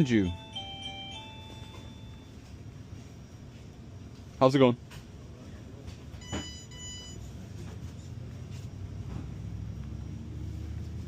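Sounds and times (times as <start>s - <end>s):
low steady hum: 0.0s - 11.0s
short electronic beep: 6.2s - 7.2s.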